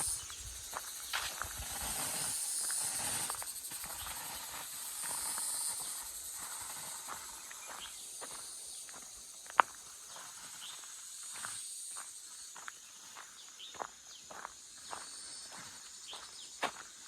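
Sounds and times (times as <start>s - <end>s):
high hiss: 0.0s - 12.6s
faint ticks and rustles: 0.0s - 16.8s.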